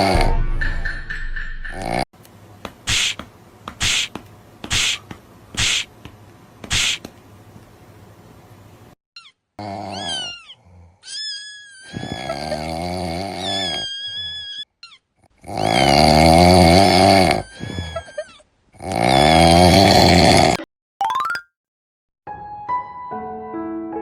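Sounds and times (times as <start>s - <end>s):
person snoring with whistle: 0.0s - 0.4s, 1.7s - 2.0s, 11.8s - 13.9s, 15.4s - 18.1s, 18.8s - 20.7s.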